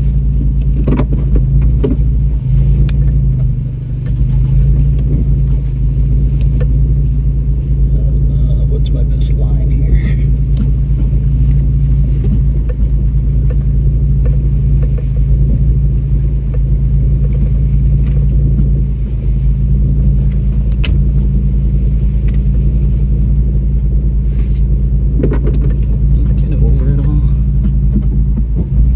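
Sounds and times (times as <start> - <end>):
truck engine rumbling: 0.0 - 28.9
small knocks and clicks: 25.2 - 26.0.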